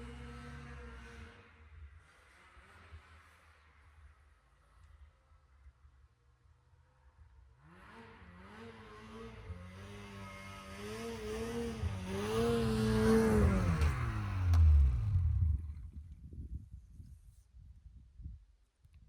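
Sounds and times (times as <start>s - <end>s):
vehicle engine approaching: 0.0s - 3.8s, 7.5s - 16.6s.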